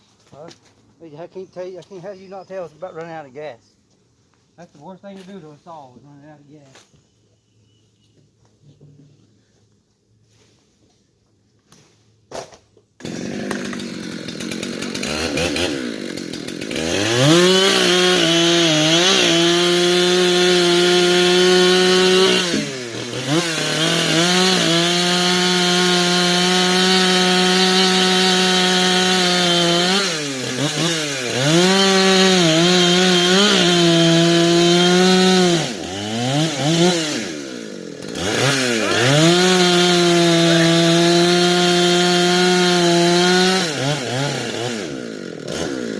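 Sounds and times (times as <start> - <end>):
chainsaw running at high revs: 13.0 - 45.9.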